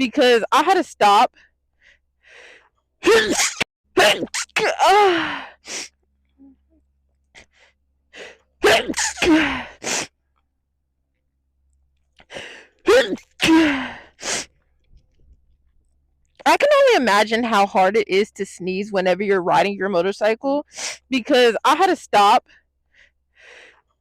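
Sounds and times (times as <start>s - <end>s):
woman sneezing: 3.0s - 5.9s, 8.6s - 10.1s, 12.9s - 14.5s.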